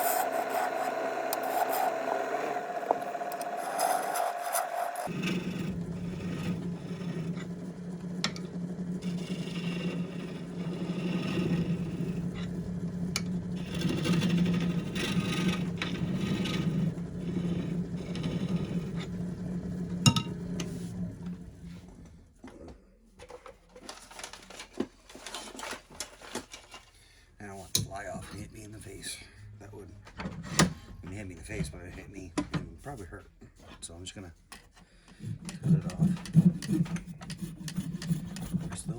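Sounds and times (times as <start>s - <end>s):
turning tool scraping wood: 0.0s - 22.2s, 31.1s - 38.9s
wood lathe humming: 0.0s - 22.3s, 35.3s - 38.9s.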